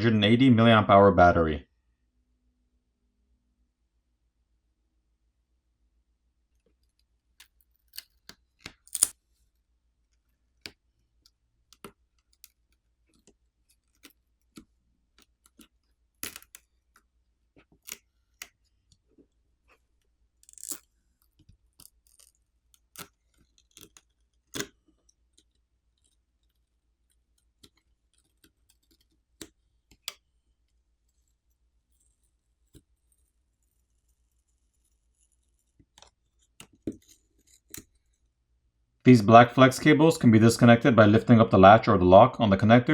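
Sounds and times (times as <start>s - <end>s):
small clicks of hand tools: 10.6s - 19.0s, 20.4s - 30.2s, 35.2s - 38.2s.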